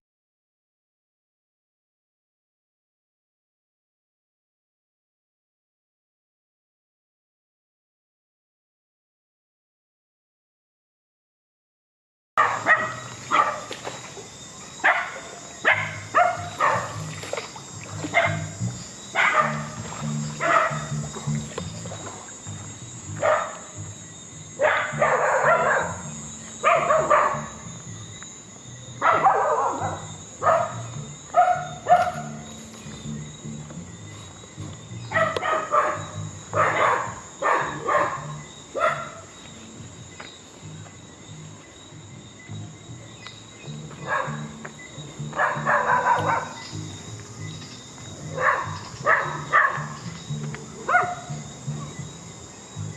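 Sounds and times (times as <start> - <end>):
dogs barking: 12.4 - 22.4, 23.0 - 23.9, 24.5 - 27.9, 28.9 - 33.2, 35.0 - 39.3, 43.8 - 47.0, 48.1 - 52.0.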